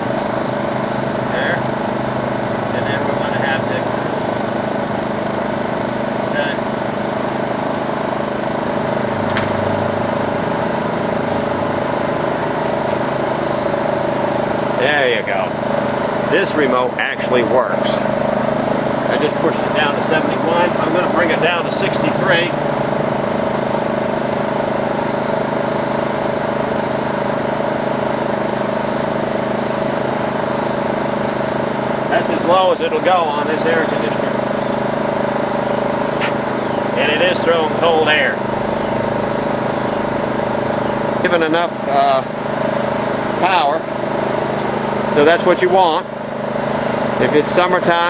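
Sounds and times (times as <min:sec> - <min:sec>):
short high beeps: 0:00.0 - 0:01.4, 0:13.4 - 0:13.8, 0:25.1 - 0:27.2, 0:28.7 - 0:31.7
generator running: 0:00.0 - 0:48.0
sharp click: 0:09.3 - 0:09.6.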